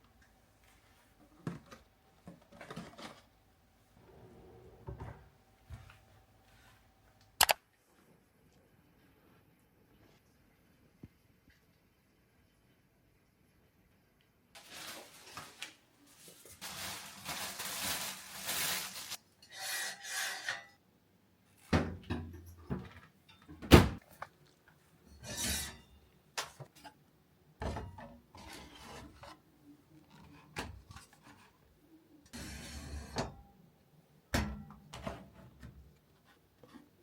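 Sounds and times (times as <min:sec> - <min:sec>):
objects scraping and rubbing: 0:14.6 - 0:20.8, 0:25.1 - 0:25.9, 0:28.3 - 0:31.6.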